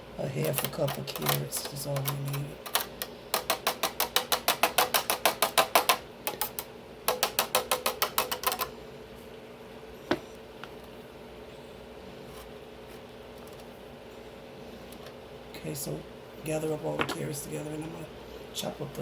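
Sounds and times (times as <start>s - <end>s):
knife chopping carrots on board: 3.4s - 8.6s.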